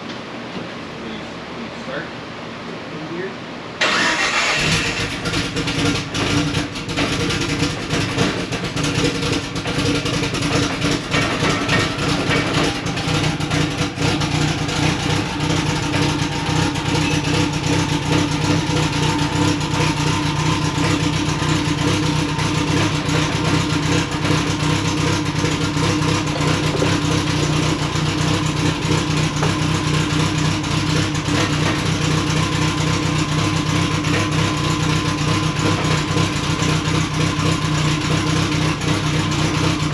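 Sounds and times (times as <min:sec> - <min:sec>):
car engine running: 0:03.8 - 0:39.9
faint driveline whine: 0:09.3 - 0:39.9.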